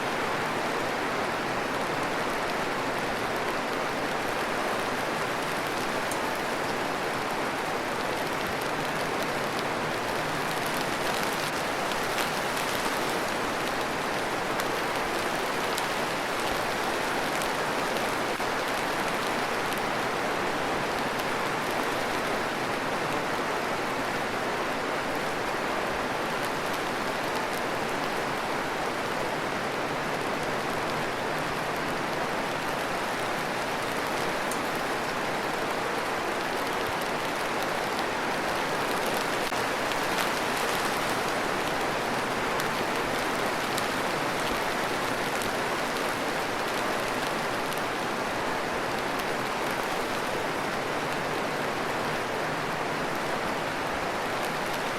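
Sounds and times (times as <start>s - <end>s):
steady rain: 0.0s - 54.9s.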